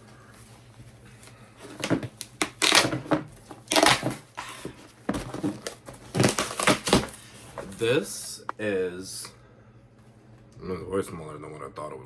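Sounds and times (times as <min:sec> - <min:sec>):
packaging tearing and crinkling: 0:01.8 - 0:04.5, 0:05.3 - 0:07.2.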